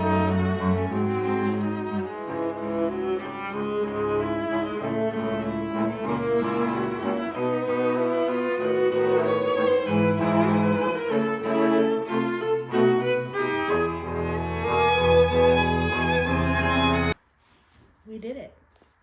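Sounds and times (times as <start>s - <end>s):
bowed string music: 0.0s - 17.2s.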